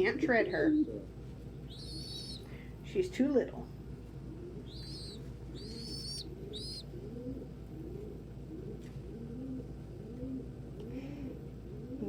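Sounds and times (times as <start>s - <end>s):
pigeons cooing: 1.7s - 2.6s, 4.2s - 12.0s
young pigeon squeaky peeps: 1.7s - 2.6s, 4.4s - 7.5s.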